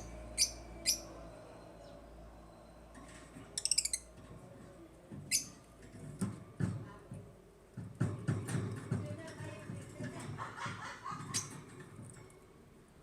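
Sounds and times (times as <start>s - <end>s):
birds chirping: 0.0s - 4.4s, 5.2s - 5.6s.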